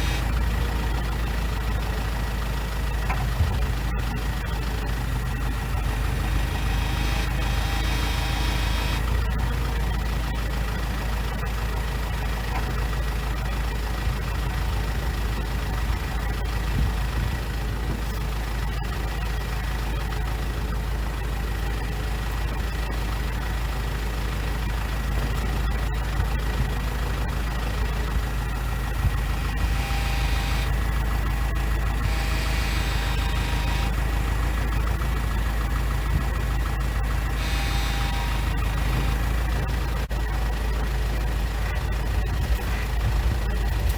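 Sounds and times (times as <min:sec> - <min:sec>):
tractor diesel engine running: 0:00.0 - 0:43.9
thin steady whine: 0:29.0 - 0:39.9.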